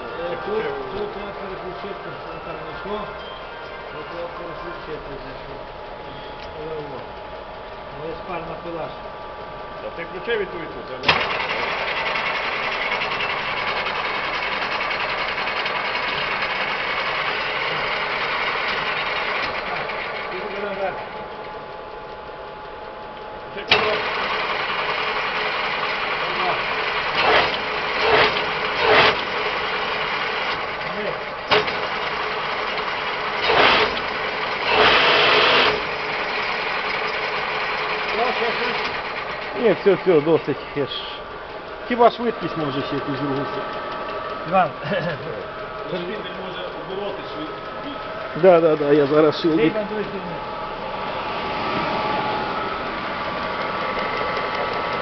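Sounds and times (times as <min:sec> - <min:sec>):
milling machine running: 0:00.0 - 0:55.0.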